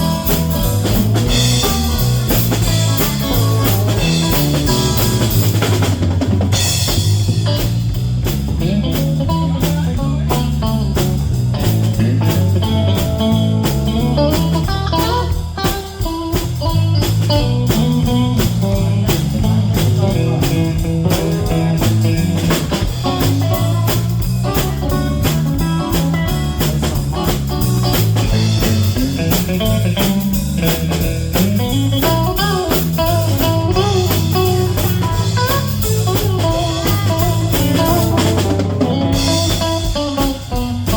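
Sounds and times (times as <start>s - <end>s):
live blues band playing: 0.0s - 40.9s.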